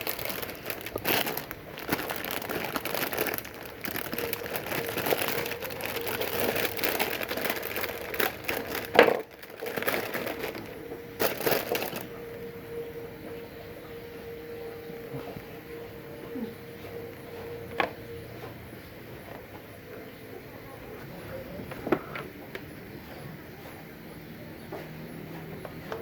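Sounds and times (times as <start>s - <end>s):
crinkling and crumpling: 0.0s - 20.1s.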